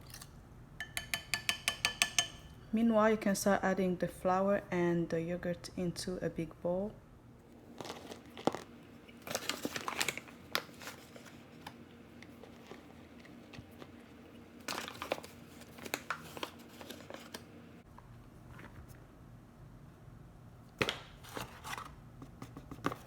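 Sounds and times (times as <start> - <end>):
crinkling and rustling with clicks: 7.4 - 19.0.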